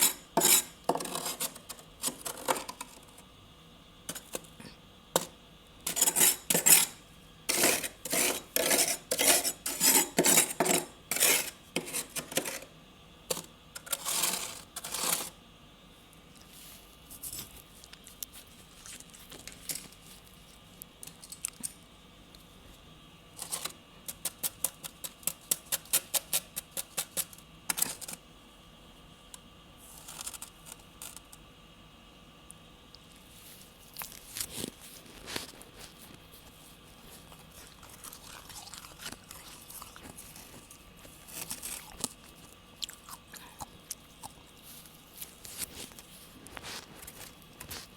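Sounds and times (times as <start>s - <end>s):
freezer frost being scraped: 0.0s - 3.0s, 5.9s - 12.7s, 13.3s - 15.4s, 23.4s - 28.2s, 34.3s - 42.5s.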